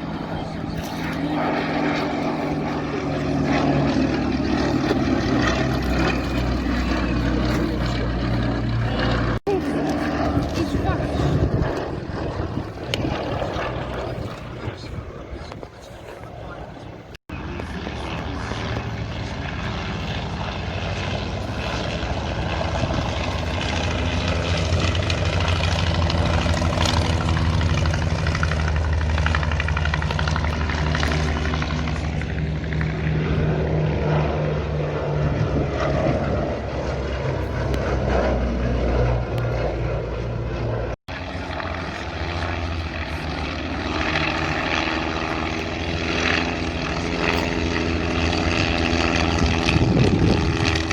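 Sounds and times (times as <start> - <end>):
propeller aircraft engine drone: 0.0 - 50.9.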